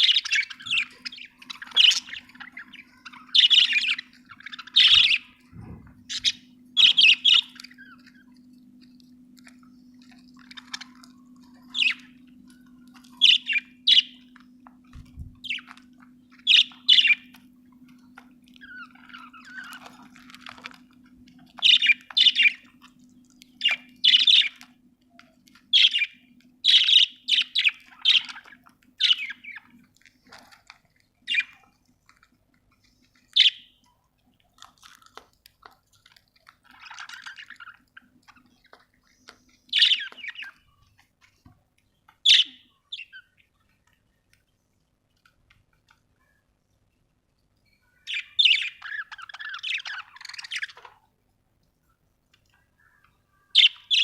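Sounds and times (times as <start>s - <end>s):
budgerigars chirping: 0.0s - 8.4s, 9.4s - 17.4s, 18.6s - 24.8s, 25.6s - 29.7s, 31.3s - 31.6s, 33.3s - 33.7s, 39.7s - 40.7s, 42.2s - 43.3s, 48.1s - 50.9s, 53.6s - 54.0s.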